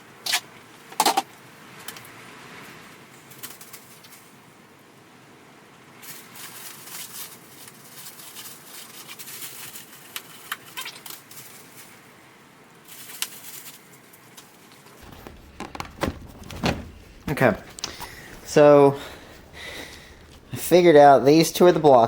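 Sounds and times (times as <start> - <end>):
light clicks and knocks: 15.0 - 22.0
packaging rustling: 15.0 - 22.0.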